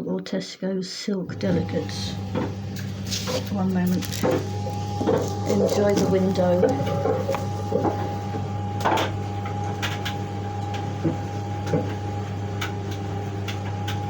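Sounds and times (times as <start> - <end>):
steady low hum: 1.2 - 14.0
constant thin whine: 1.3 - 14.0.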